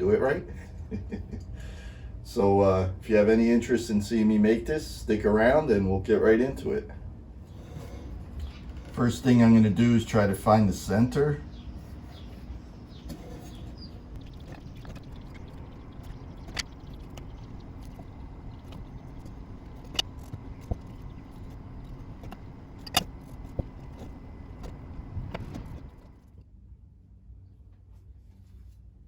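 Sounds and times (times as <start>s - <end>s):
mechanical hum: 0.0s - 29.0s.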